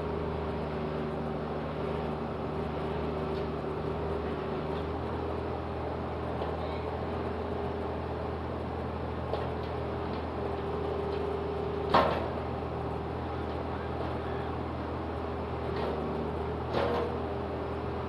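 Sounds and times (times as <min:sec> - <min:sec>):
diesel engine running: 0:00.0 - 0:18.0
sharp metal clunk: 0:11.9 - 0:12.4.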